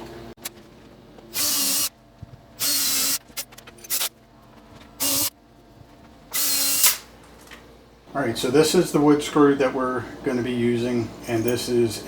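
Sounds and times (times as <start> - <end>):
cordless drill whining: 1.4 - 1.9, 2.6 - 3.2, 5.0 - 5.3, 6.4 - 7.0.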